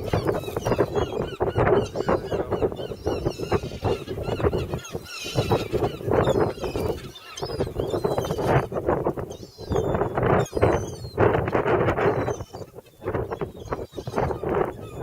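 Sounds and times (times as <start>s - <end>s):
flock of birds calling: 0.0s - 15.0s.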